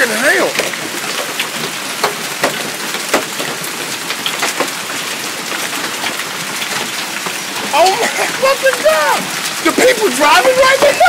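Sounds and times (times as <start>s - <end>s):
hailstones clattering: 0.0s - 11.0s
sharp cracks of hailstones striking: 0.0s - 11.0s.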